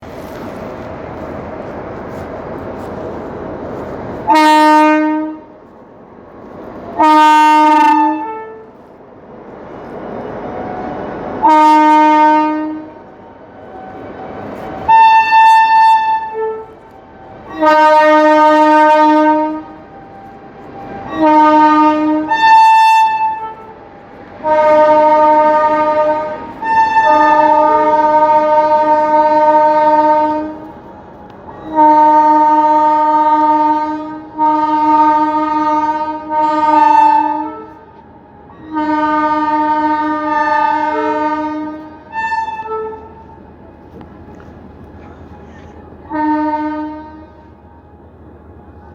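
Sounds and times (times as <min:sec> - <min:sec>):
locomotive dual-tone horn blasts: 0:04.2 - 0:05.5, 0:06.9 - 0:08.8, 0:11.4 - 0:13.0, 0:14.8 - 0:23.8, 0:24.4 - 0:30.7, 0:31.5 - 0:43.4, 0:45.6 - 0:47.8.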